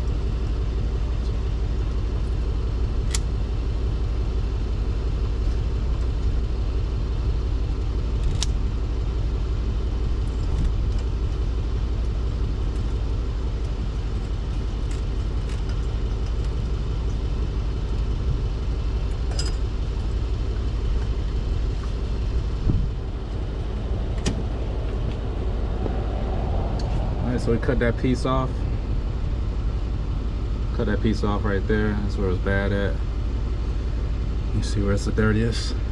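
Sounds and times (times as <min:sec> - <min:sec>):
vehicle engine idling: 0:00.0 - 0:35.9.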